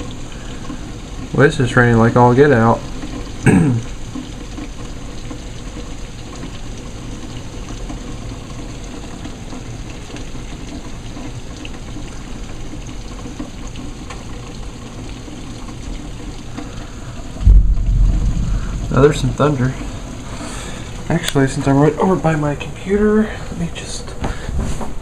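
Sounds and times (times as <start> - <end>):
heavy rain pouring: 0.0 - 24.6
hail: 16.5 - 21.5.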